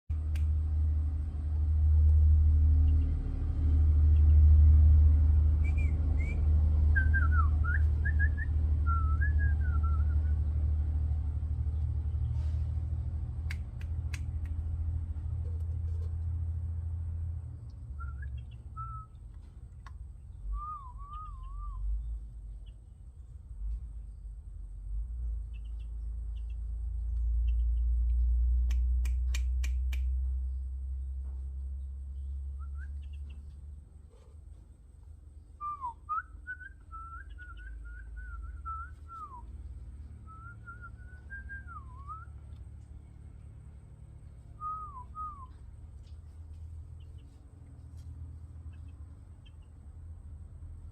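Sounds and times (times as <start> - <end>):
low rumble: 0.1 - 50.9
whistling: 5.6 - 10.4, 17.9 - 19.1, 20.5 - 21.9, 32.6 - 33.0, 35.6 - 39.5, 40.2 - 42.4, 44.6 - 45.6
person whistling: 44.6 - 45.6.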